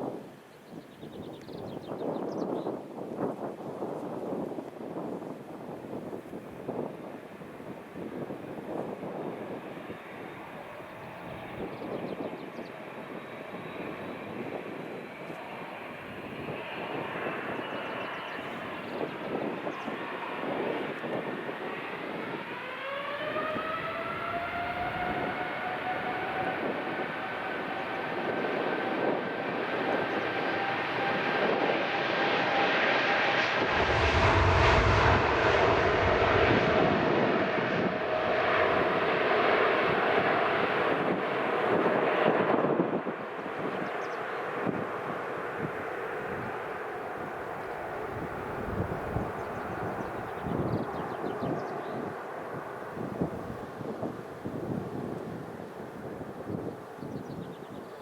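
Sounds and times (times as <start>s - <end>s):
jet engines spooling up: 8.0s - 54.0s
deep low rumble: 33.3s - 39.0s.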